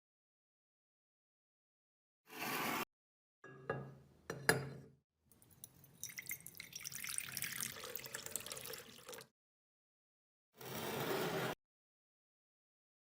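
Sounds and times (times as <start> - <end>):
liquid splashing and dripping: 5.3 - 9.3.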